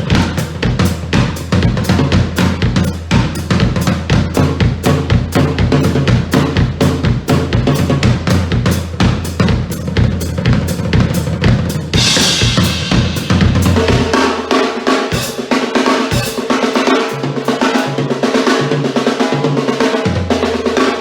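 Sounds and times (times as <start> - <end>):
cymbal crash: 0.0 - 6.2, 11.8 - 17.3
steady ringing tones: 0.0 - 6.4
drum kit playing loudly: 0.0 - 21.0.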